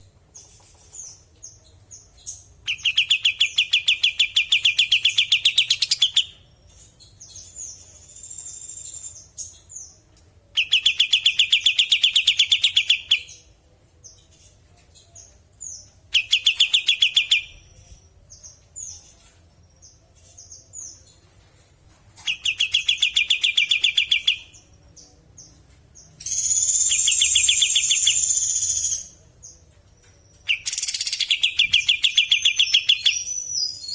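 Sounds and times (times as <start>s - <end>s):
high bird chirps: 22.2s - 24.7s, 26.2s - 29.2s, 30.4s - 33.9s.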